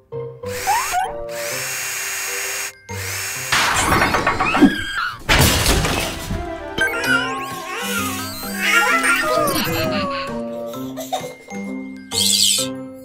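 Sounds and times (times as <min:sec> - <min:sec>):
cartoon background music: 0:00.0 - 0:13.0
power drill whirring: 0:00.5 - 0:05.1.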